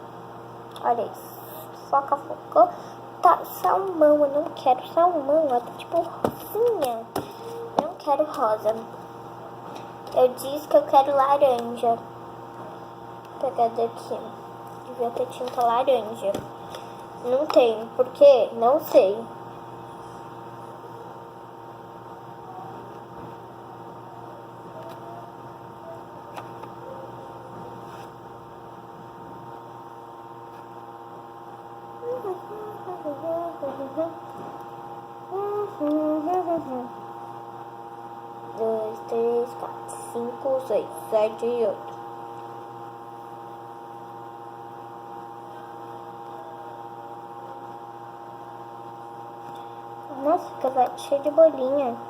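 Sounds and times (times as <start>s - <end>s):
steady electrical hum: 0.0s - 52.0s
person humming a tune: 32.0s - 34.2s, 35.3s - 36.9s.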